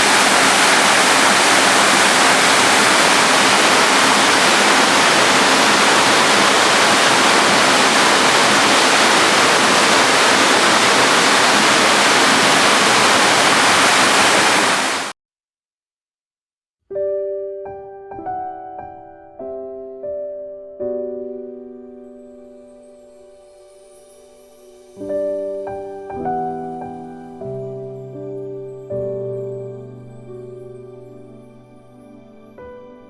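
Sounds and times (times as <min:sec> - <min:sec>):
waterfall rushing: 0:00.0 - 0:15.1.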